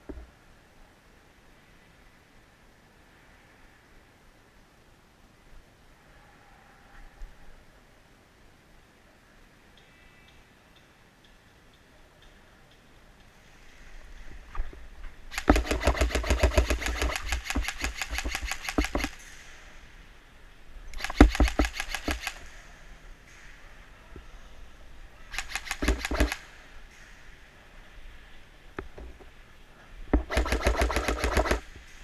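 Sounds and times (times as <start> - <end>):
airsoft rifle firing bursts: 15.3 - 19.2, 20.9 - 22.4, 25.3 - 26.5, 30.2 - 31.7.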